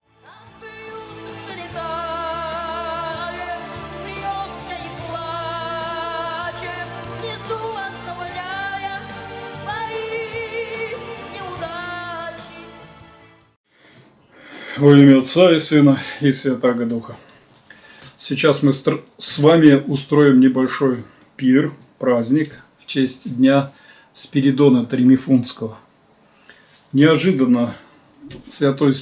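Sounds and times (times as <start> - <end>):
wavering singing voice: 0.1 - 13.2.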